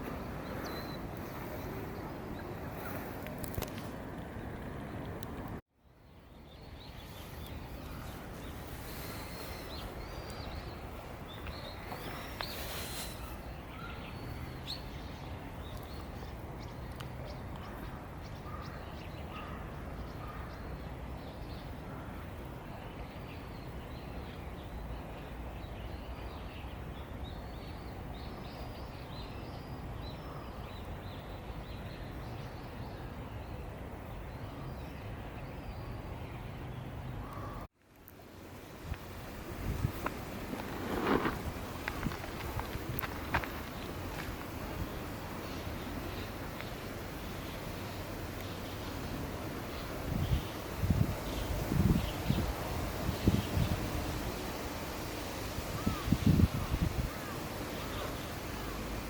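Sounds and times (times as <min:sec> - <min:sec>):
small birds chirping: 0:00.0 - 0:38.2, 0:38.9 - 0:59.0
brief rustle: 0:39.9 - 0:44.5.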